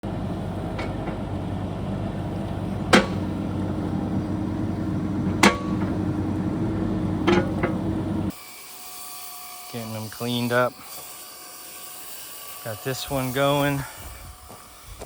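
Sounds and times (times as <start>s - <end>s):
excavator diesel engine running: 0.0s - 8.3s
metallic clanks: 0.5s - 1.4s, 2.1s - 4.3s, 5.0s - 8.3s.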